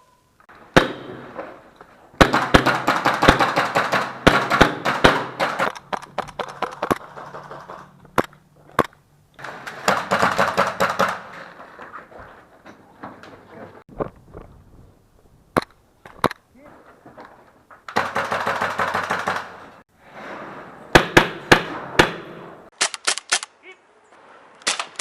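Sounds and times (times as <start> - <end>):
airsoft guns firing: 0.7 - 1.6, 2.2 - 11.4, 17.9 - 19.7, 20.9 - 23.4.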